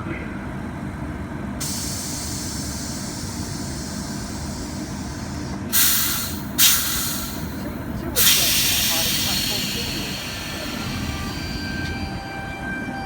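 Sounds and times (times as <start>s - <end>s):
electric train rumble: 0.0s - 13.0s
faint air hiss: 1.6s - 12.0s
loud compressed air hisses: 1.6s - 12.1s.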